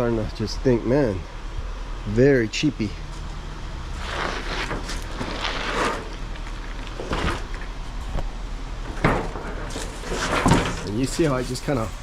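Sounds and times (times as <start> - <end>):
sheet metal scraping and crinkling: 3.9 - 12.0.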